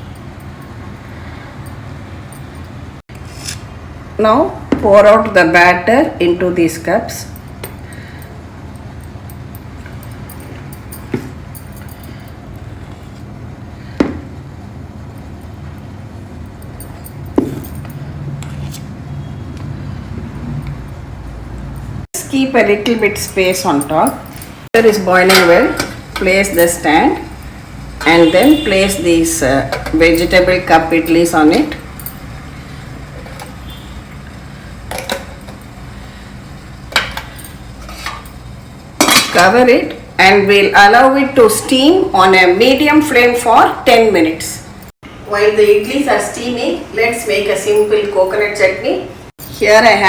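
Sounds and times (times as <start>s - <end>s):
metal clinks: 7.4s - 12.4s, 16.4s - 18.1s
utensil clinking against cups: 33.1s - 35.7s.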